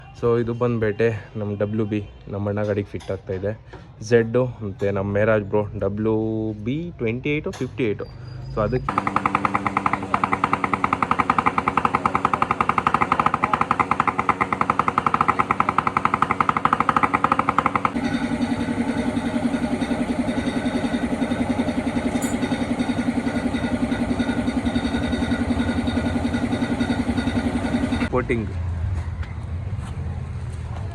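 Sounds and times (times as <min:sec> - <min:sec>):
deeper motorcycle engine idling: 0:08.9 - 0:28.1
two-stroke motorcycle idling: 0:08.9 - 0:28.1.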